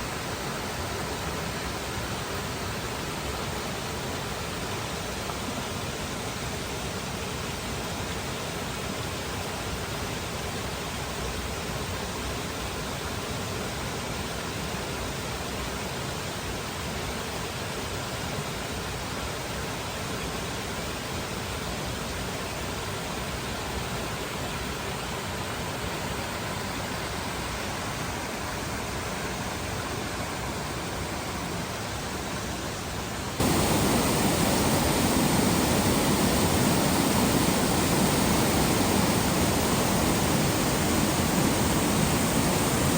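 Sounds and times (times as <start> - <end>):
flowing water rushing: 21.7 - 42.9.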